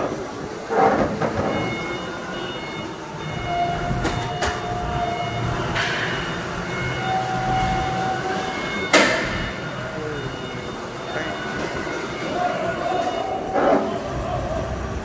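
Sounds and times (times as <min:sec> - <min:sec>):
running machinery din: 0:00.5 - 0:15.0.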